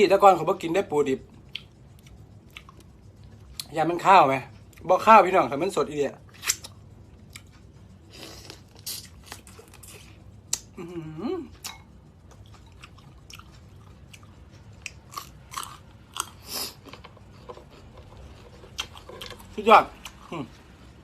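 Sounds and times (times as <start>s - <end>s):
chewing and biting: 1.4s - 3.7s, 6.3s - 10.7s, 11.5s - 20.7s
person humming: 10.8s - 11.5s.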